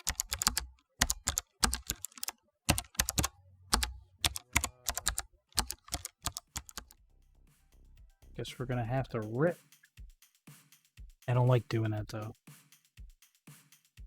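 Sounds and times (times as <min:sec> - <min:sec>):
sharp clicks and taps: 0:00.0 - 0:07.0.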